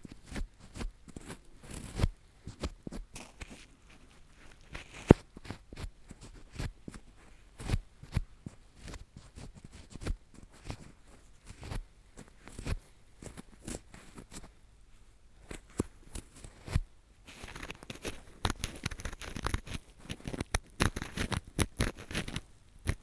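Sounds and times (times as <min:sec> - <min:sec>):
earpick scraping inside ear: 0:16.6 - 0:23.0.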